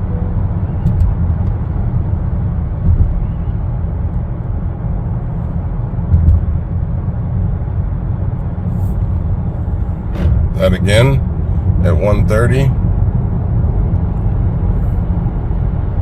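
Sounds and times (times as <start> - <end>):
road and tyre rumble: 0.0 - 16.0
car bumps: 2.8 - 3.3, 6.0 - 6.6, 9.9 - 11.0.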